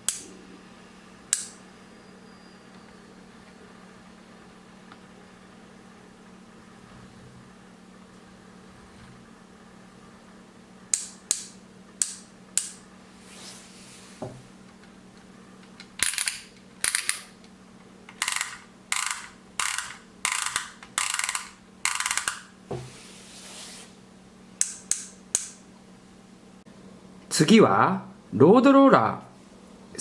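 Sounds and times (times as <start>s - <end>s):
sharp plastic clicks: 10.9s - 12.8s, 24.6s - 25.6s
rasping ratchet-like bursts: 18.2s - 22.5s.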